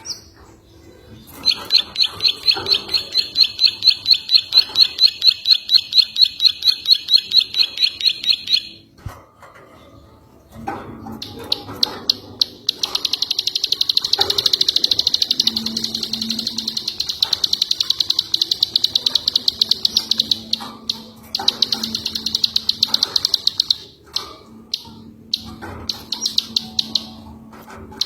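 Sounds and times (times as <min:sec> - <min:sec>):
songbird trilling: 0:01.3 - 0:08.8, 0:11.2 - 0:27.3.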